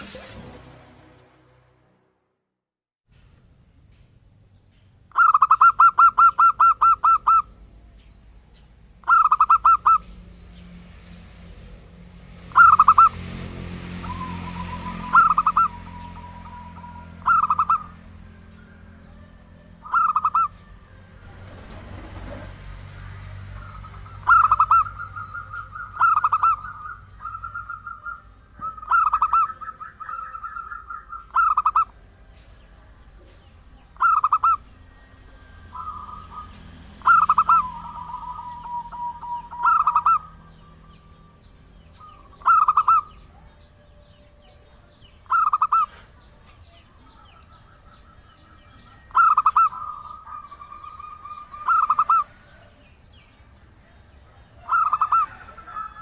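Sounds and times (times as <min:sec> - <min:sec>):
dove cooing: 0:05.2 - 0:07.4, 0:14.1 - 0:18.0, 0:19.1 - 0:22.5, 0:24.2 - 0:31.9, 0:35.8 - 0:40.4, 0:42.0 - 0:43.5, 0:45.3 - 0:46.1, 0:49.0 - 0:52.8, 0:54.4 - 0:56.0.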